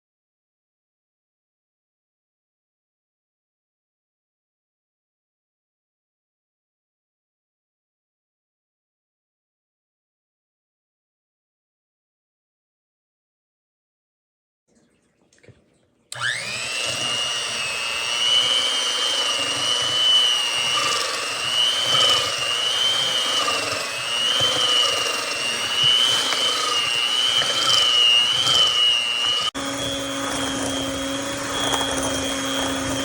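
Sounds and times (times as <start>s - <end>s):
electric hand mixer whine: 16.1s - 33.0s.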